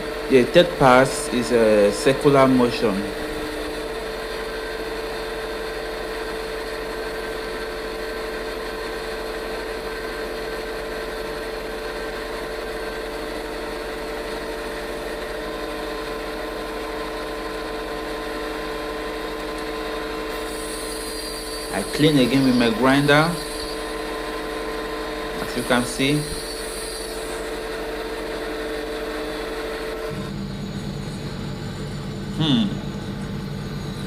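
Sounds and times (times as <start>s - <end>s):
low electrical hum: 0.0s - 6.0s, 13.1s - 34.0s
steady machine hum: 0.0s - 34.0s.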